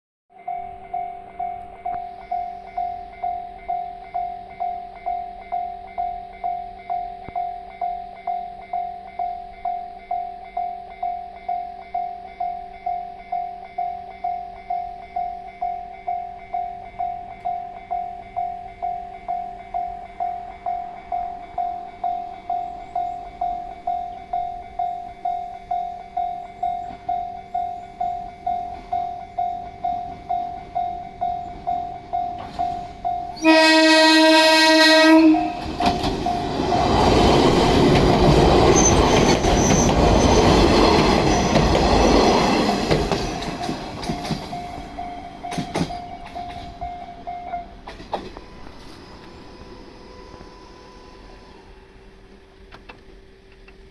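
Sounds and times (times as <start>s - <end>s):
train passing over crossing: 0.3s - 53.9s
train horn blast: 33.3s - 36.0s, 48.4s - 52.3s.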